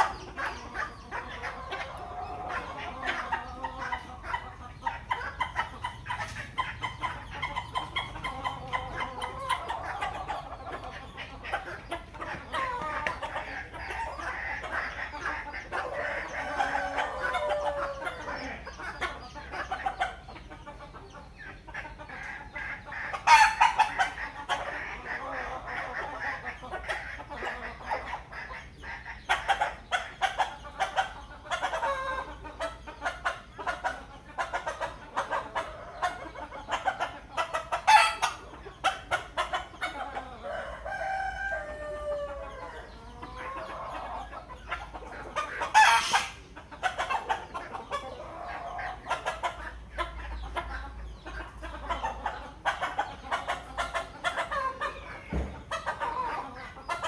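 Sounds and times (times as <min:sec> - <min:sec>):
chicken squawks: 0:00.0 - 0:57.0
chickens clucking: 0:00.0 - 0:57.0.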